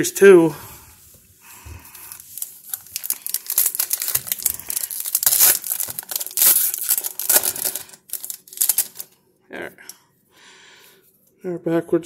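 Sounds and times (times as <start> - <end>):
foil wrapper tearing and crinkling: 1.9 - 9.1.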